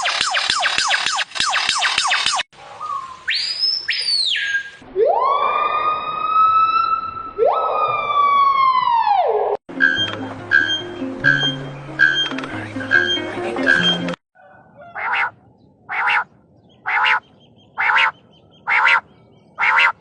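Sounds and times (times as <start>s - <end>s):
siren-like wailing: 4.8s - 10.7s
rhythmic music: 9.7s - 14.2s.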